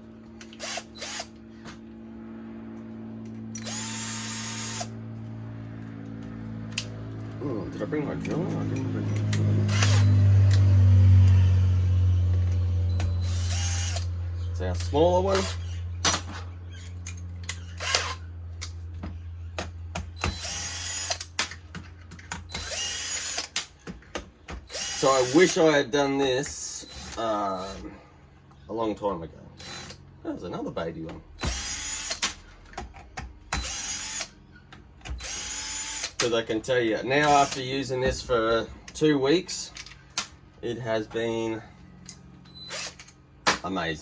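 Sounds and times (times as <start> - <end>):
steady low hum: 0.0 - 44.0
cordless power driver whirring: 0.3 - 1.9, 2.7 - 5.1, 8.2 - 11.6, 12.3 - 18.8, 20.0 - 23.8, 24.6 - 25.6, 29.6 - 30.0, 31.4 - 36.3, 42.5 - 43.2.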